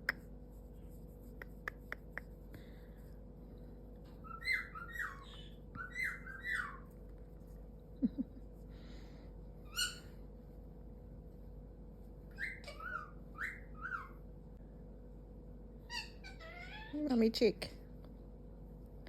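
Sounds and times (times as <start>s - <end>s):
parrot chirping: 4.2s - 6.9s, 9.6s - 10.2s, 12.3s - 14.2s, 15.9s - 17.0s.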